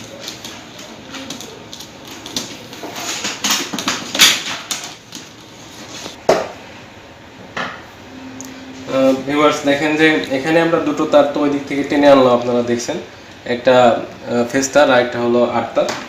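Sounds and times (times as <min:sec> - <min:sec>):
electrical wires rustling and clicking: 0:00.0 - 0:06.2.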